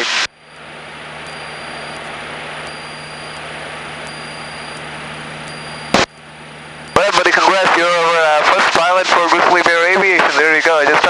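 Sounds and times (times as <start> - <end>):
faint high-pitched whine: 0.0 - 10.4
aircraft engine and propeller hum: 0.2 - 8.7.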